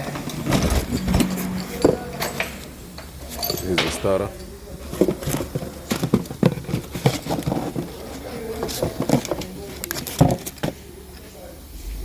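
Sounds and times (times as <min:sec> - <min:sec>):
hard objects knocking and clattering: 0:00.0 - 0:10.8.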